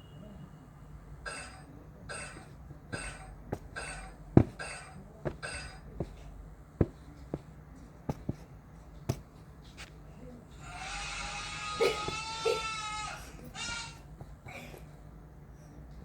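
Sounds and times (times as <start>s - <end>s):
sharp knocks and clicks: 2.2s - 8.4s.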